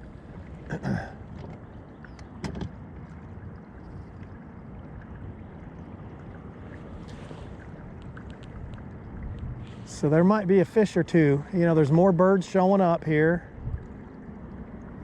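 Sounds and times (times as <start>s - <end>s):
wind and water rushing: 0.0s - 15.0s.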